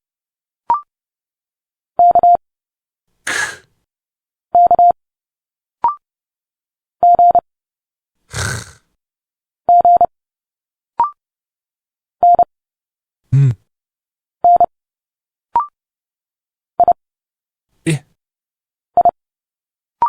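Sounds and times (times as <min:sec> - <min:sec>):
hissing spoken consonant: 0:03.3 - 0:03.6, 0:08.3 - 0:08.8.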